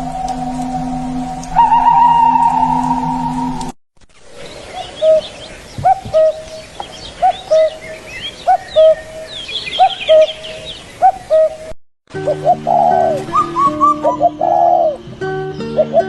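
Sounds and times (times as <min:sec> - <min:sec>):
birds chirping: 0:00.0 - 0:16.0
bird two-note call: 0:01.4 - 0:03.7.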